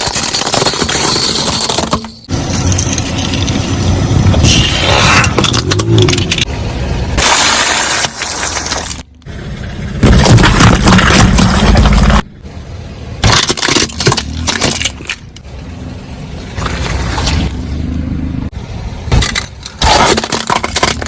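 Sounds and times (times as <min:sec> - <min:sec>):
car engine rumble: 0:01.4 - 0:21.0
tyre crushing objects: 0:10.0 - 0:12.2, 0:19.1 - 0:21.0.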